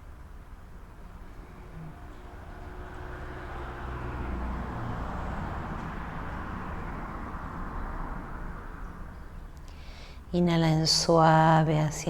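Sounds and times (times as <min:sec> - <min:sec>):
background rumble and hiss: 0:08.7 - 0:12.0.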